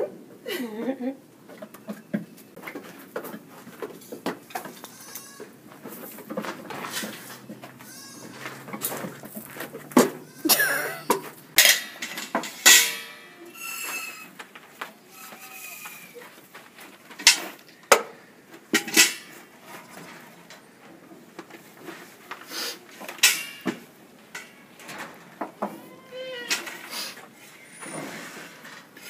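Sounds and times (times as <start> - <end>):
metal containers clanking: 5.8 - 14.1, 17.2 - 21.0, 23.0 - 25.8.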